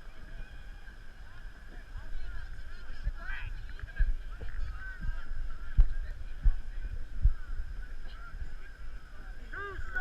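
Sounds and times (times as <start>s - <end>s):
low thumps on microphone: 1.6s - 9.0s.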